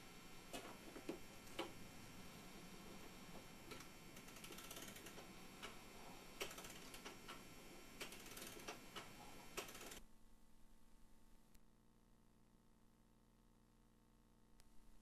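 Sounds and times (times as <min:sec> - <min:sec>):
clock mechanism clicking and ratcheting: 0:03.7 - 0:05.8, 0:06.4 - 0:07.4, 0:08.0 - 0:10.0.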